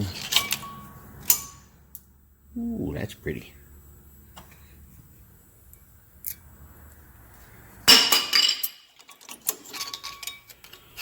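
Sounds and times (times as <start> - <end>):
metal brake parts clinking: 0.0 - 1.7, 7.9 - 11.0.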